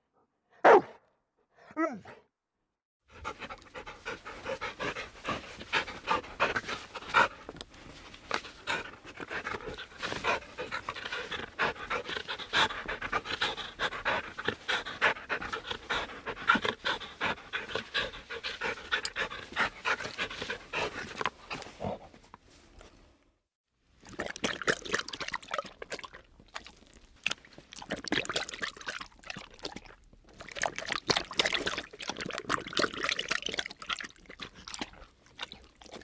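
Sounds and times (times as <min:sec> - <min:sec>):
dog panting rapidly: 0:03.1 - 0:22.0.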